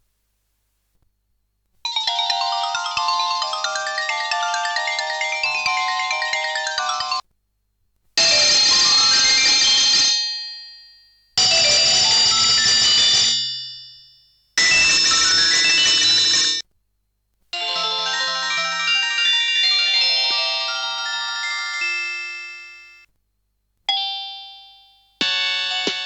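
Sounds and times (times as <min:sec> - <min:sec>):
phone ringtone melody: 0:01.9 - 0:07.2, 0:17.6 - 0:23.0, 0:24.0 - 0:26.0.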